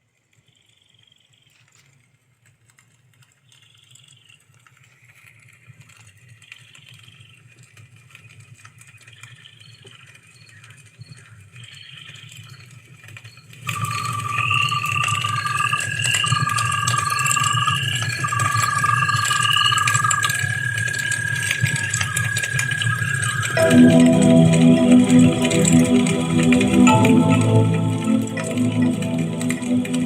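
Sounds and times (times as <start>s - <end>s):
electronic music over loudspeakers: 23.5s - 30.0s.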